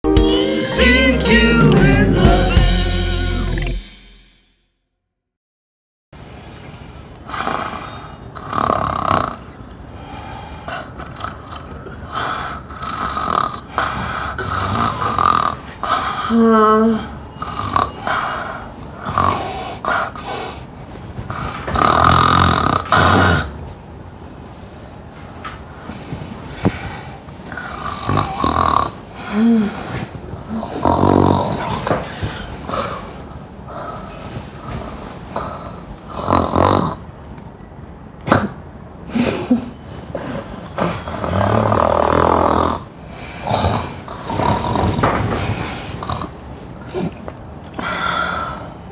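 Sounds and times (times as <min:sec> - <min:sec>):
person snoring loudly: 0:14.3 - 0:16.8, 0:21.7 - 0:23.5, 0:27.6 - 0:29.7, 0:30.6 - 0:32.0, 0:36.1 - 0:37.1, 0:40.8 - 0:45.0.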